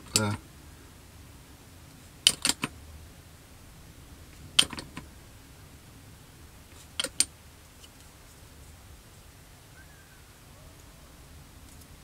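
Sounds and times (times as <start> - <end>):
plastic parts clicking and tapping: 4.6 - 5.1, 6.8 - 7.9.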